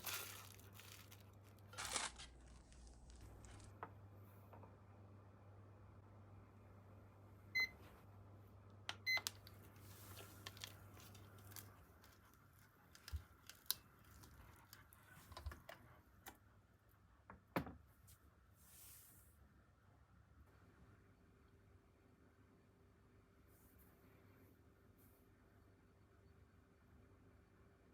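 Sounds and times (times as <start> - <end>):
faint low hum: 0.0 - 27.9.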